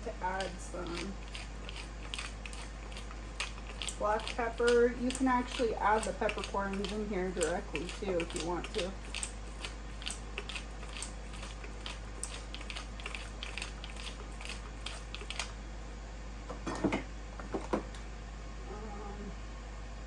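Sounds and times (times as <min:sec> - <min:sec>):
pepper mill grinding: 0:00.0 - 0:15.5.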